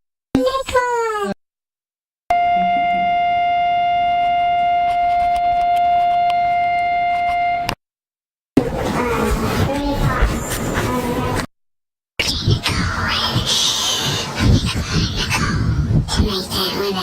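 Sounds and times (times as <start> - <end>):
steady tone: 2.3 - 7.8
mixed noisy audio: 8.6 - 11.5, 12.2 - 17.0.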